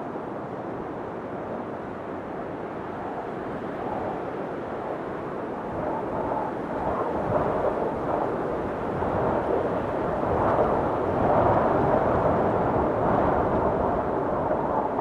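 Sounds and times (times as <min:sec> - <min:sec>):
wind buffeting microphone: 0:01.6 - 0:15.0.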